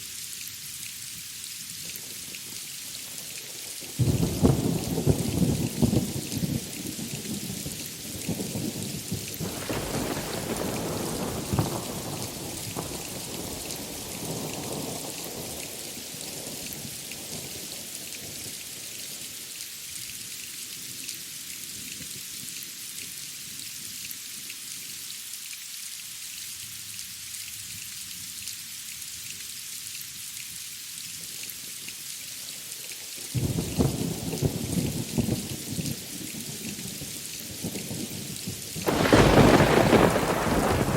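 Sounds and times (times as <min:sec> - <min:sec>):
steady rain hiss: 0:00.0 - 0:40.9
thunder rumble: 0:09.3 - 0:15.0, 0:38.9 - 0:40.9.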